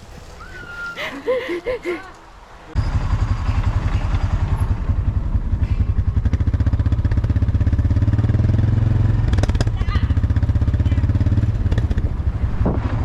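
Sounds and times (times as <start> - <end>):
vehicle engine chugging: 2.8 - 12.4.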